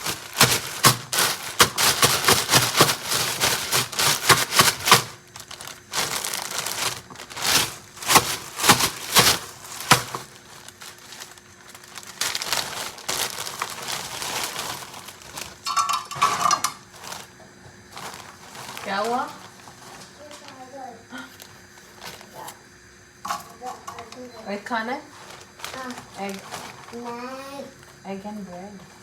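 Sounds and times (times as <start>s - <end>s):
packaging crinkling: 0.0s - 22.6s, 25.0s - 28.0s.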